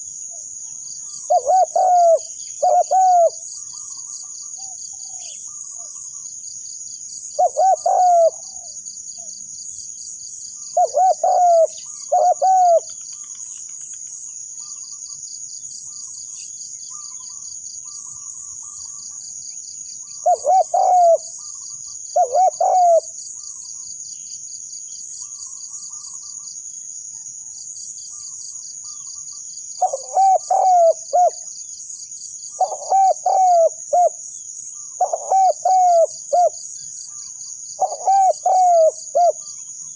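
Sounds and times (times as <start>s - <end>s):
dove cooing: 1.2s - 3.9s, 7.4s - 8.7s, 10.8s - 13.4s, 20.2s - 21.5s, 22.1s - 23.2s, 29.8s - 31.5s, 32.6s - 34.2s, 35.0s - 36.6s, 37.8s - 39.5s.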